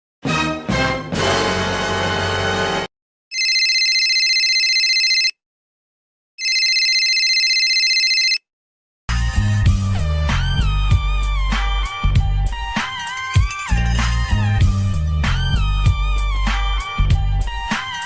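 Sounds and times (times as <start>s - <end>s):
telephone ringing: 3.3s - 5.4s, 6.4s - 8.4s.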